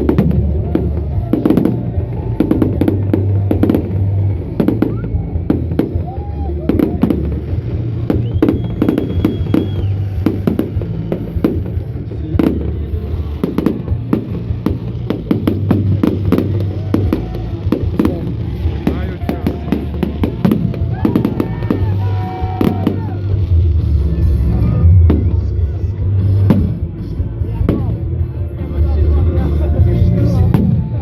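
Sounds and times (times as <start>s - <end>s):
fireworks bursting: 0.0s - 28.2s
loud music with bass: 0.0s - 31.0s.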